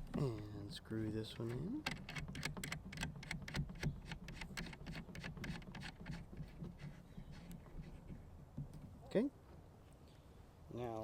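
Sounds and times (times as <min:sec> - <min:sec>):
antenna sections screwed together: 0:01.4 - 0:07.6.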